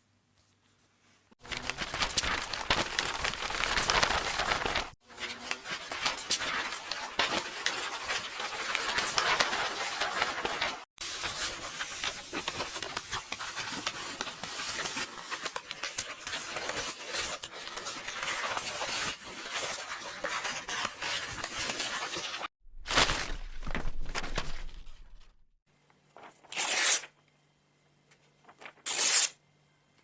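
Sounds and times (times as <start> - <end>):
book pages turning: 1.4 - 25.3.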